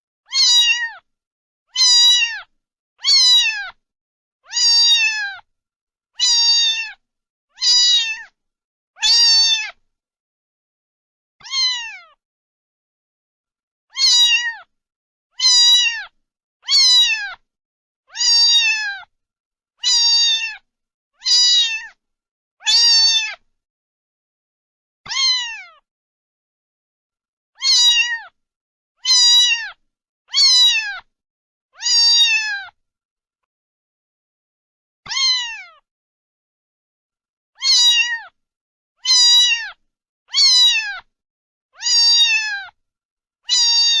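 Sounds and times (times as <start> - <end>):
cat meowing: 0.3 - 1.1, 1.7 - 3.8, 4.4 - 5.5, 6.2 - 7.0, 7.6 - 8.4, 9.0 - 9.8, 11.4 - 12.2, 13.9 - 14.7, 15.4 - 17.4, 18.1 - 19.1, 19.8 - 20.6, 21.2 - 22.0, 22.6 - 23.4, 25.1 - 25.8, 27.6 - 28.4, 29.0 - 31.1, 31.8 - 32.8, 35.0 - 35.8, 37.6 - 38.4, 39.0 - 41.1, 41.8 - 42.8, 43.5 - 44.0.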